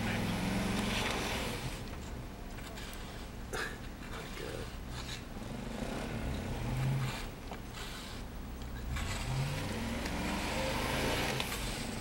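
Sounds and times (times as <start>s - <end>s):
truck engine revving: 0.0s - 1.9s, 5.4s - 7.4s, 8.8s - 12.0s.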